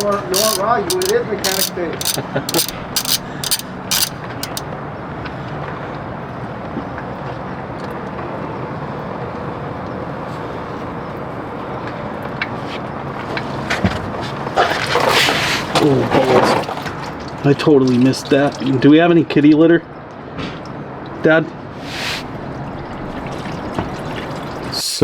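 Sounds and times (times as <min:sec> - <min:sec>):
socket ratchet clicking: 0:00.0 - 0:04.6.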